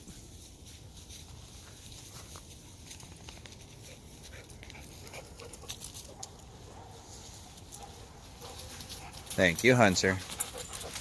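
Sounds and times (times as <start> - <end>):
light ticks and crackles: 0.1 - 6.5
dog panting: 3.9 - 5.7, 8.4 - 9.4, 10.2 - 11.0.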